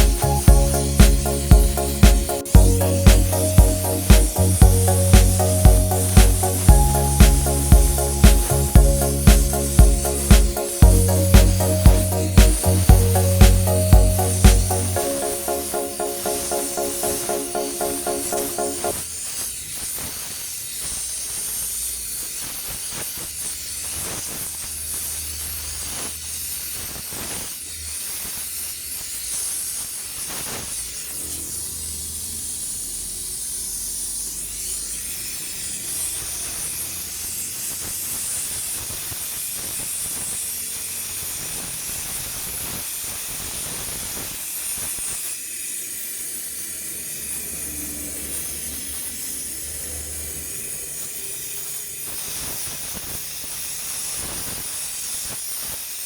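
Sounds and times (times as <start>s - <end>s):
welding arc hissing and crackling: 19.4s - 31.0s, 33.6s - 45.4s, 52.0s - 56.0s.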